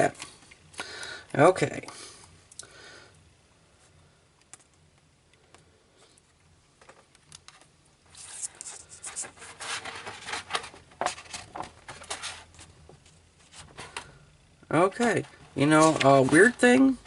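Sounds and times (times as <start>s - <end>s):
rustling and scratching: 6.8s - 14.1s, 15.0s - 17.0s.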